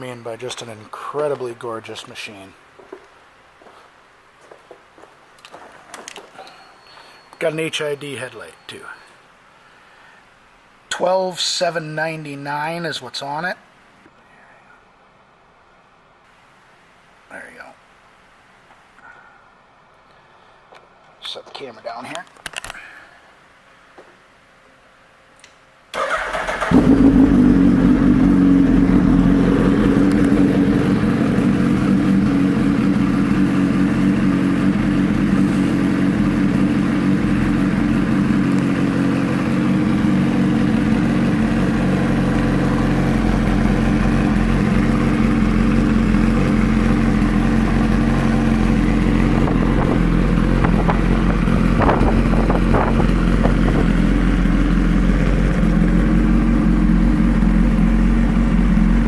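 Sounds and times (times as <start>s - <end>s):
motorcycle engine starting and idling: 25.9s - 59.0s.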